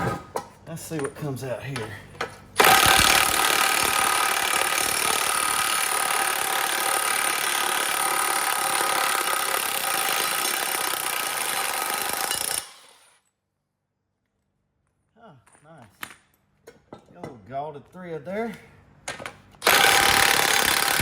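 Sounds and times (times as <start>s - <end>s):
power tool whining: 2.6s - 13.2s, 19.6s - 21.0s.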